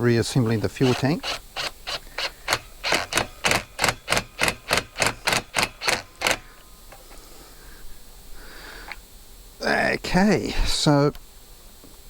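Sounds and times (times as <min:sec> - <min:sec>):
hand tool rasping clicks: 0:00.4 - 0:07.1.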